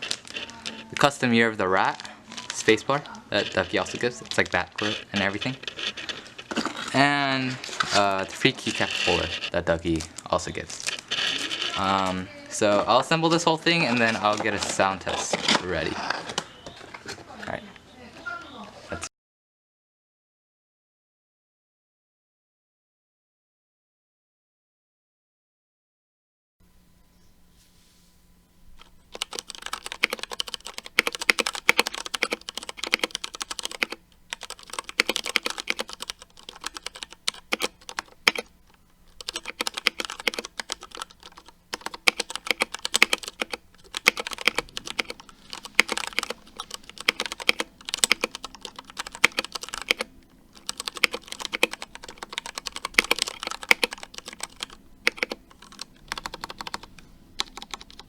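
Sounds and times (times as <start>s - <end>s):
mechanical keyboard typing: 3.4s - 10.1s, 10.9s - 12.2s, 28.8s - 58.0s.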